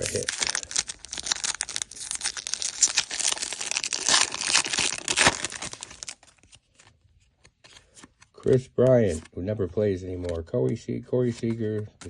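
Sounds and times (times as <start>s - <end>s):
foil wrapper crinkling: 0.0s - 6.9s.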